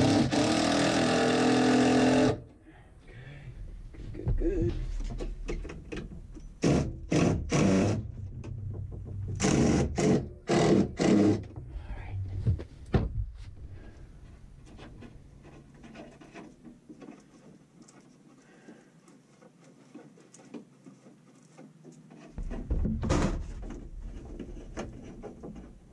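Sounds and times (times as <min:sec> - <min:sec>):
power drill bursts: 0:00.0 - 0:02.4
knocks: 0:04.2 - 0:11.7, 0:22.4 - 0:25.9
faint handling noise: 0:11.6 - 0:25.9.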